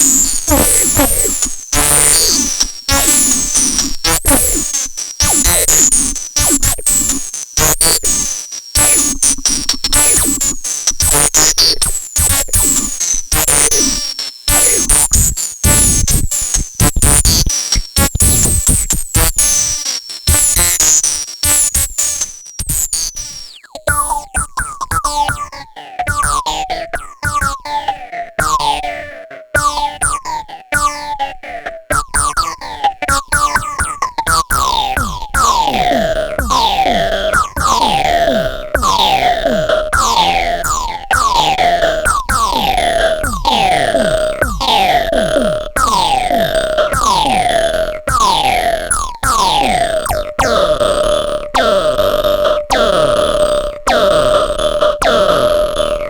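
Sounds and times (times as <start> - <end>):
percussive synthesizer pulse: 0.0 - 4.6, 31.8 - 55.9.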